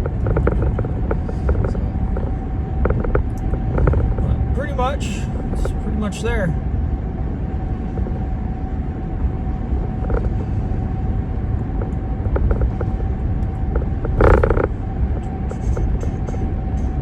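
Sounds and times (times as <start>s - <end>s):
rattle or knock: 0.0s - 4.3s, 13.7s - 14.7s
car road noise rumble: 0.0s - 17.0s.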